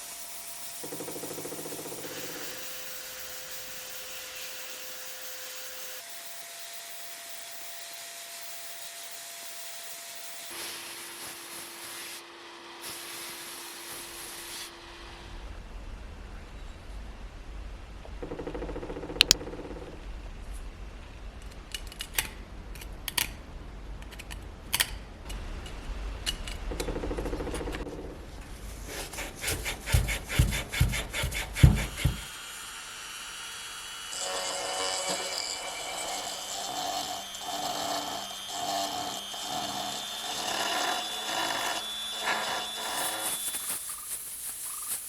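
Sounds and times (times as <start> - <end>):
tool clicks and taps: 19.2 - 19.4
rasping strokes: 28.6 - 32.4, 33.4 - 45.0
heavy knocks: 29.9 - 32.3.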